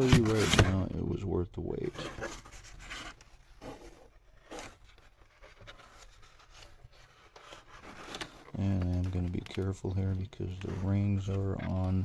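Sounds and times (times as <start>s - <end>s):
rustling and scraping of wrapping: 0.0s - 1.2s, 1.8s - 12.0s.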